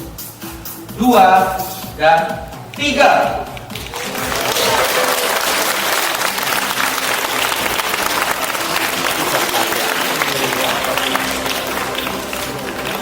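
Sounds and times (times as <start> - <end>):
audience applauding: 3.8 - 13.0.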